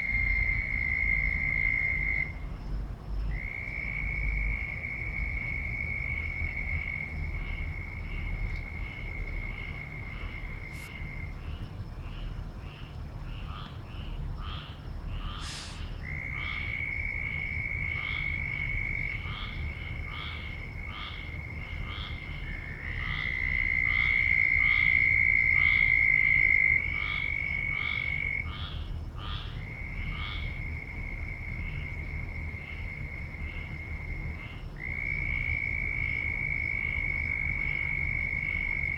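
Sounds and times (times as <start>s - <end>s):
frog short repeated calls: 13.4s - 18.4s.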